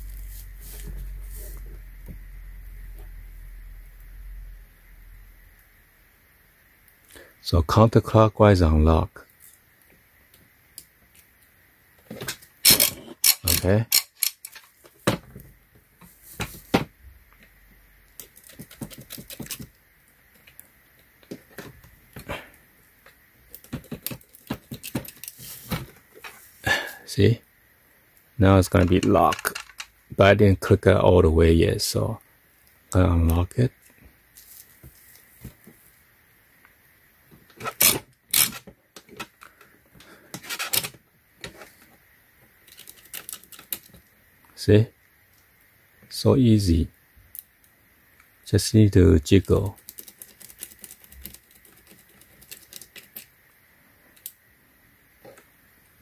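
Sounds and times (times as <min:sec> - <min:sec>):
lock pick clicking and scraping: 0:12.6 - 0:14.7, 0:37.6 - 0:38.6, 0:49.8 - 0:53.3.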